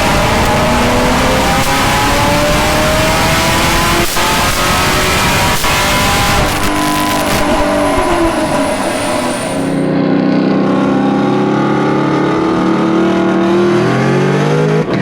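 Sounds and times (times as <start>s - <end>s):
exhaust crackles: 0.0s - 10.0s
car engine accelerating: 0.0s - 10.2s.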